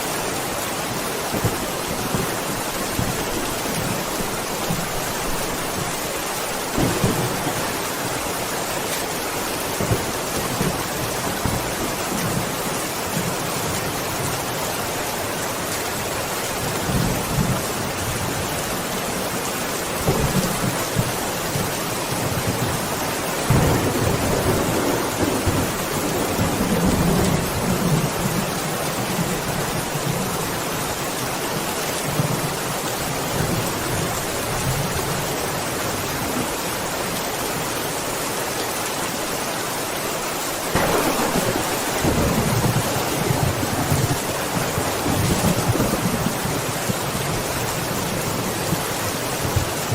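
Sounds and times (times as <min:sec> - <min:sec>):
heavy rain hiss: 0:00.0 - 0:49.9
thunder rumbling: 0:01.3 - 0:13.4, 0:20.0 - 0:30.1, 0:40.7 - 0:49.9.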